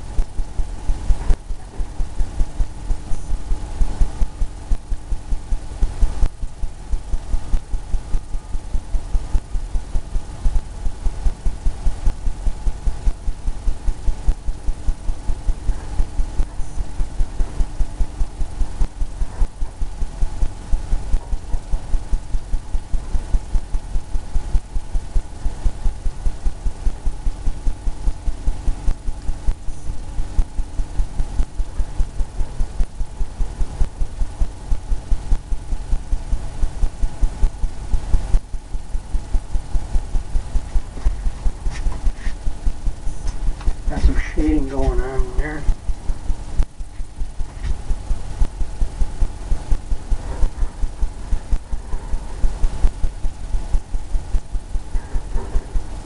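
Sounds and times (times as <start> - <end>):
steady hum: 0.0 - 56.0
paintbrush dabbing on canvas: 40.6 - 42.5.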